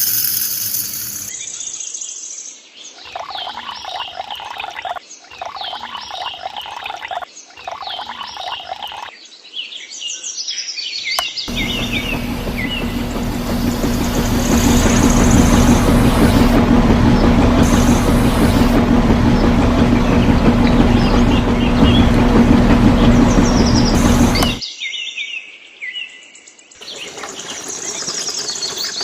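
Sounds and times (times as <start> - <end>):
machine engine humming: 11.5 - 24.6.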